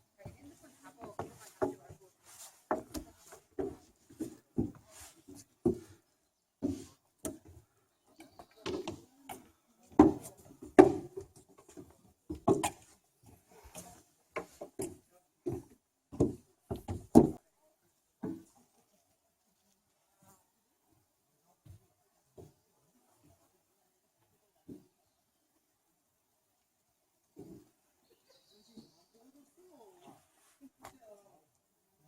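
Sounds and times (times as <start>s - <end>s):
footsteps on forest path: 0.3s - 7.6s.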